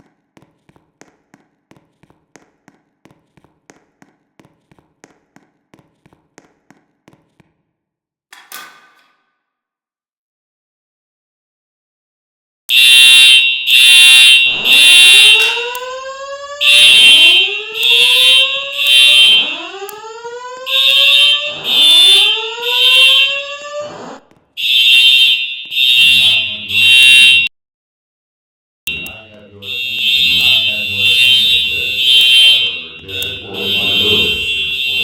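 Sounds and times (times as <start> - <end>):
fire alarm horn blasts: 12.7 - 27.5, 28.9 - 35.0.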